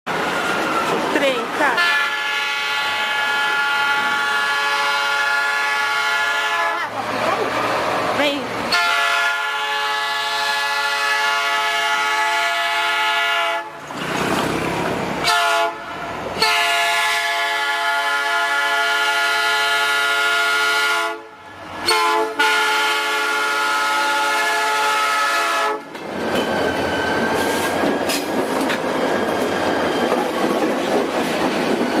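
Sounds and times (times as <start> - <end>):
train rumbling over rails: 0.1 - 32.0
locomotive horn blasts: 1.8 - 6.9, 8.7 - 13.8, 15.2 - 25.9.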